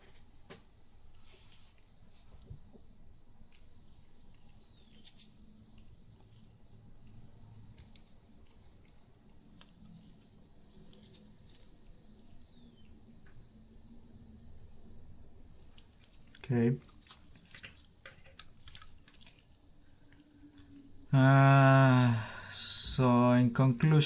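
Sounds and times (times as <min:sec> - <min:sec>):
faint high-pitched drone: 0:21.0 - 0:24.0.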